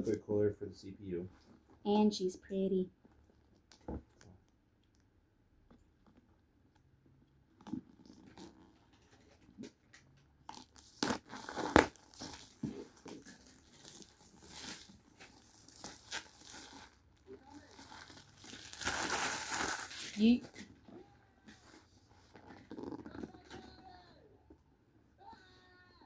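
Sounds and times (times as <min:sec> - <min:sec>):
cardboard box tearing and crinkling: 0:10.5 - 0:20.7.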